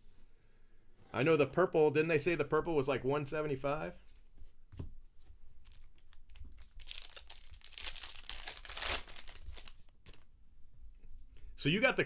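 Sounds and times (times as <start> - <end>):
foil wrapper crinkling and tearing: 5.6 - 10.3.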